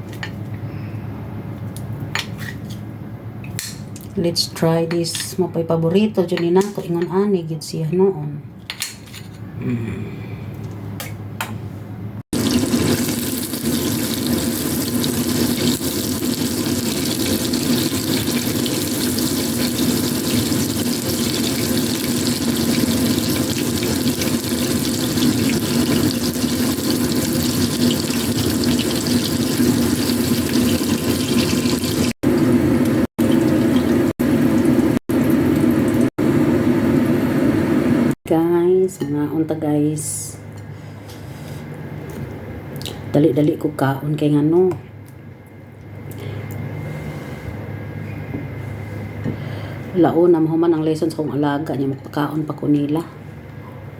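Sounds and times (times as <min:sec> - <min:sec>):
tap water running into sink: 0:12.4 - 0:32.2.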